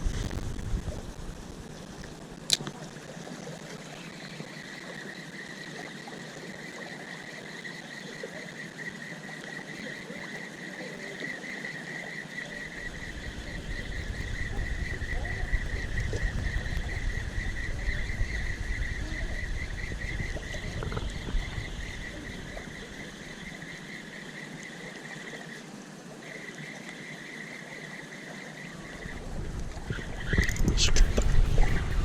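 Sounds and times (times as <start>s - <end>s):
low rumble: 0.0s - 2.4s, 12.7s - 23.6s, 28.7s - 32.0s
high-pitched insect drone: 1.6s - 32.0s.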